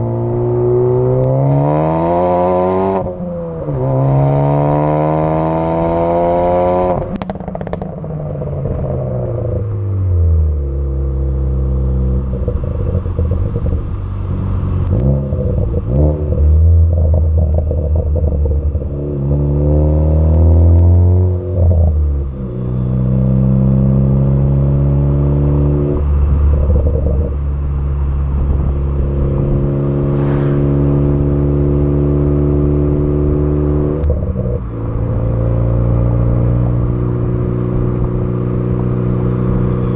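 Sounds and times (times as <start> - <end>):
car exhaust revving: 0.0 - 39.9
exhaust crackles and pops: 7.0 - 9.0, 12.1 - 19.3.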